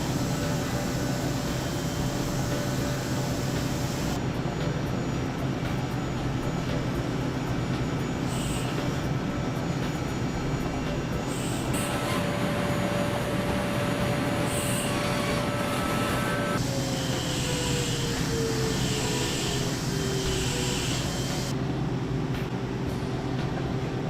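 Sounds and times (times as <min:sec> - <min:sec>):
milling machine cutting metal: 0:00.0 - 0:04.2, 0:11.3 - 0:21.5
steady machine whine: 0:00.0 - 0:24.0.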